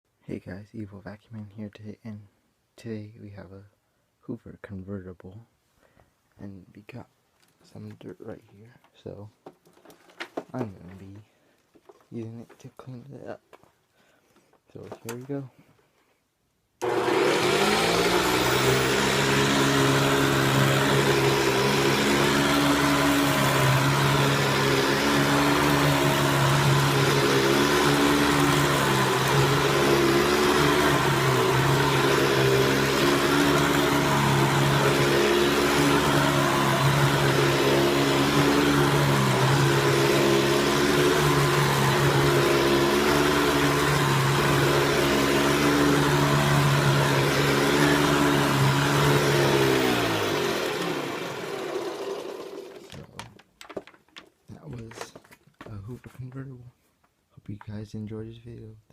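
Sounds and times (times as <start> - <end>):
vacuum cleaner running: 16.8 - 53.2.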